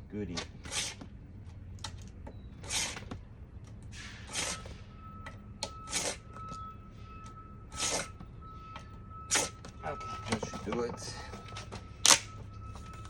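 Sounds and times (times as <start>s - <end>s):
blade scraping plexiglass: 0.4s - 1.1s, 2.6s - 3.2s, 4.0s - 4.7s, 5.9s - 6.3s, 7.8s - 8.1s, 9.3s - 9.5s.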